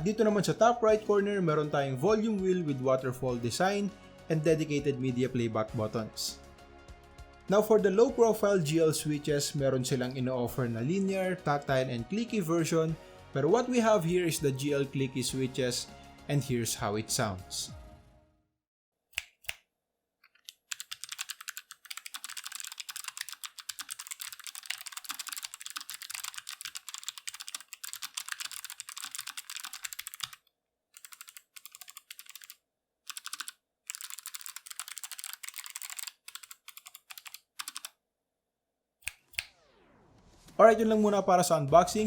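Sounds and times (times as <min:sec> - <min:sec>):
mechanical keyboard typing: 0:20.4 - 0:30.4, 0:31.0 - 0:37.9.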